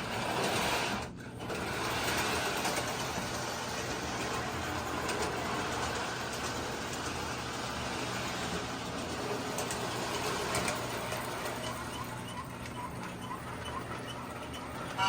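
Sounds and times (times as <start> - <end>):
model train motor whirring: 0.0 - 15.0.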